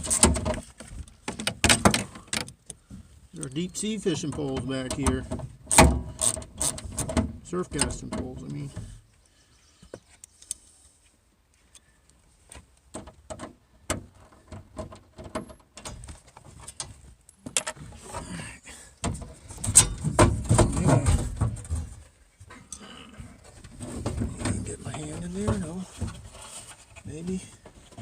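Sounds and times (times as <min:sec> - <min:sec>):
clattering against metal door: 0:19.1 - 0:21.9.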